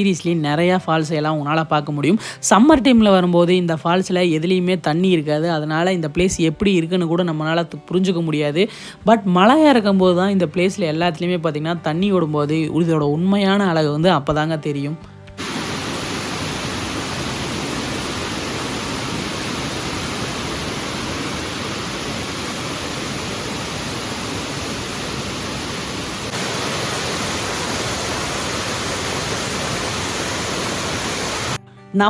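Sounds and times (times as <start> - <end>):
waterfall rushing over rocks: 15.4 - 31.6.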